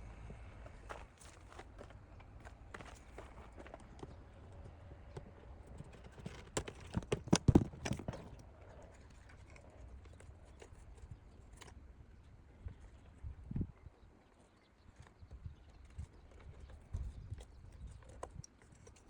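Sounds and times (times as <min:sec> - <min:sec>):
plastic and metal parts clicking: 0:02.4 - 0:11.8.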